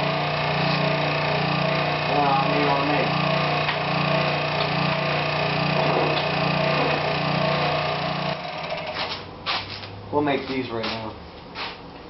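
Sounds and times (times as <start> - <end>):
motor humming: 0.0 - 9.2.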